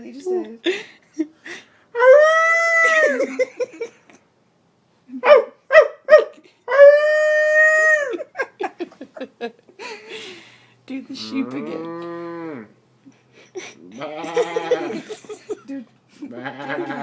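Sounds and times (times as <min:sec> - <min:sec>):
man imitating dog howling: 0:02.0 - 0:03.2, 0:06.7 - 0:08.2
man imitating dog yips: 0:02.0 - 0:03.3.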